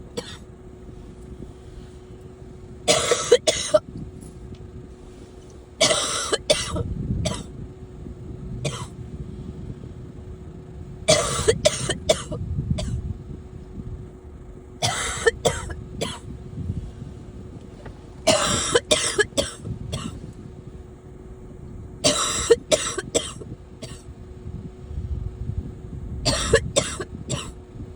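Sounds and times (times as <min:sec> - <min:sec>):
faint steady hum: 0:00.0 - 0:27.9
person coughing: 0:00.2 - 0:00.4, 0:02.9 - 0:03.8, 0:05.8 - 0:07.5, 0:08.6 - 0:08.9, 0:11.1 - 0:13.0, 0:14.8 - 0:16.2, 0:18.3 - 0:20.2, 0:22.0 - 0:24.0, 0:26.3 - 0:27.6.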